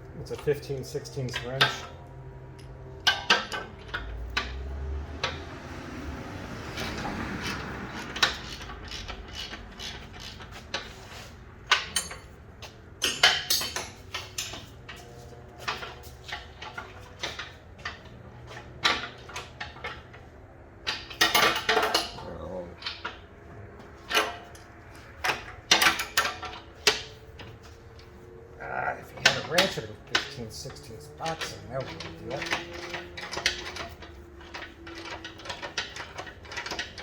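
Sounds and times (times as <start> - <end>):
wrench clinking on metal: 2.6 - 4.6, 11.7 - 12.4, 13.0 - 18.2, 20.9 - 23.2, 24.1 - 27.2, 29.2 - 37.0.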